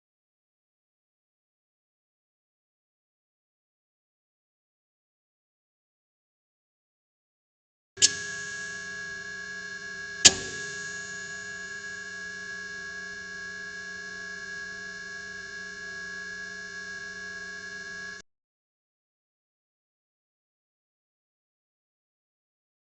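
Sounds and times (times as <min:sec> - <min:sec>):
fluorescent tube click: 0:08.0 - 0:09.0, 0:10.2 - 0:11.9
fluorescent tube hum: 0:08.0 - 0:18.2
high whine: 0:08.0 - 0:18.2.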